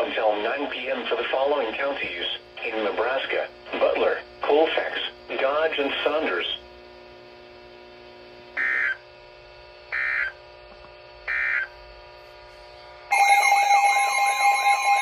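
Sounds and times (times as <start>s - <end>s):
harsh digital data squawks: 8.6s - 9.0s, 9.9s - 10.4s, 11.3s - 11.7s.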